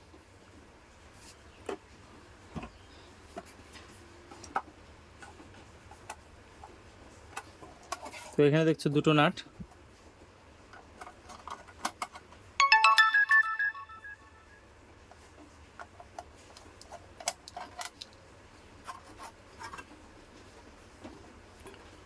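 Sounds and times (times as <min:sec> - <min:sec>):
electronic phone tune: 0:12.6 - 0:14.6.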